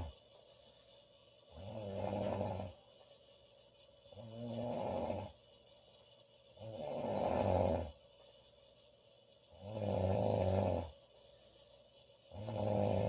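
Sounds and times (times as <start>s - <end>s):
woman snoring: 1.6s - 2.8s, 4.2s - 5.4s, 6.6s - 8.0s, 9.6s - 11.0s, 12.3s - 13.0s.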